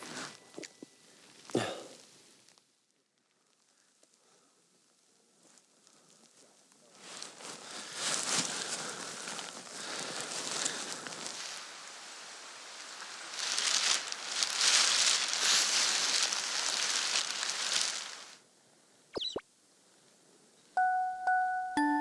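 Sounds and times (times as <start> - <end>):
rustling crackling noise: 0.0 - 18.4
whistling sound effect: 19.2 - 19.4
glockenspiel-like background music: 20.8 - 22.0.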